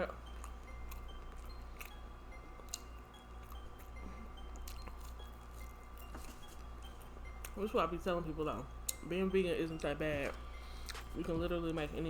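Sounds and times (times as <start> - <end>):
steady low hum: 0.0 - 12.0
person chewing food: 0.1 - 7.6, 10.2 - 11.2.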